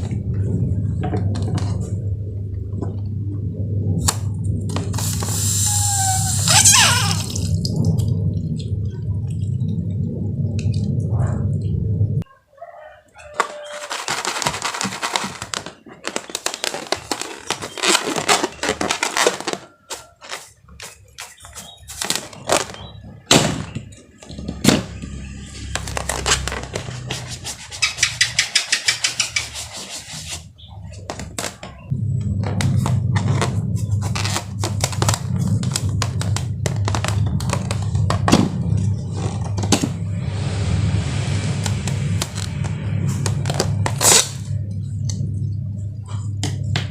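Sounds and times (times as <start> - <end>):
steady low hum: 0.0 - 12.3, 30.0 - 46.9
slime squishing: 13.5 - 27.7.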